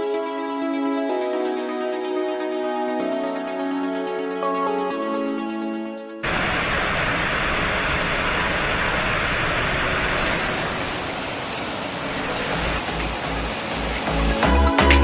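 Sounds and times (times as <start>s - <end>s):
loud rushing noise: 6.2s - 14.4s
low music beat: 12.6s - 15.0s.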